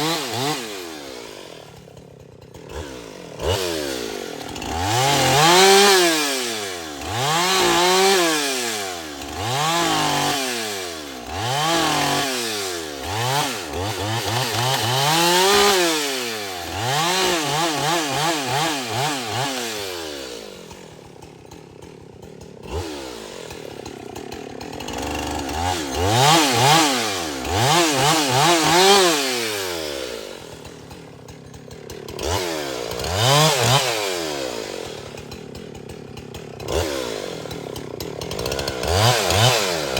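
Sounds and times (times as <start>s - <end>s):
chainsaw revving: 0.0s - 39.9s.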